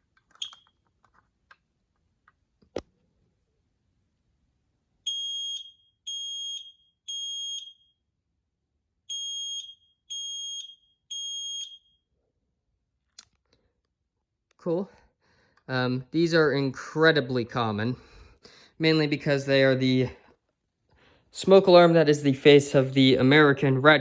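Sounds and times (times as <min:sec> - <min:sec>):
smoke alarm beeping: 0:00.3 - 0:00.8, 0:05.0 - 0:08.0, 0:09.1 - 0:12.1.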